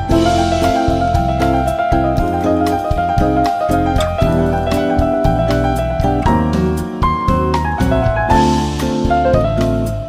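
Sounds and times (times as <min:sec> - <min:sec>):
piano-led music with beat: 0:00.0 - 0:10.0.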